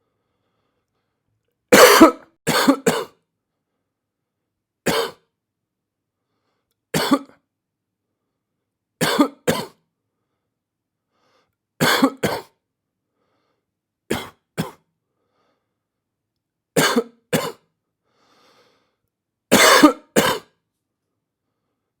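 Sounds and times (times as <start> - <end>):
person coughing: 1.7 - 3.2, 4.9 - 5.2, 7.0 - 7.4, 9.0 - 9.8, 11.8 - 12.6, 14.1 - 14.8, 16.8 - 17.7, 19.5 - 20.6.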